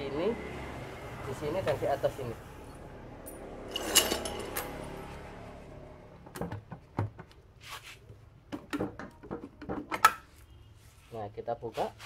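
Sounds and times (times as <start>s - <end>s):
metal tools and bolts clinking: 3.2s - 5.0s.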